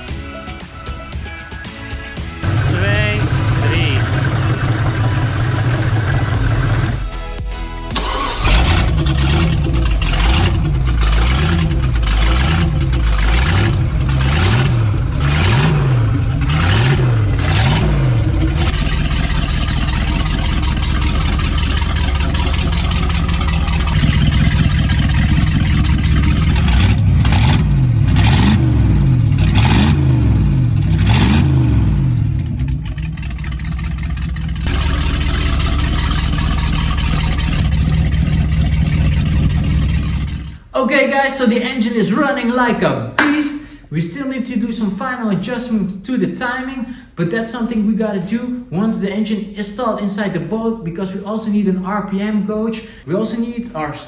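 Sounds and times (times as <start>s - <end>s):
boat engine revving: 2.1s - 40.7s.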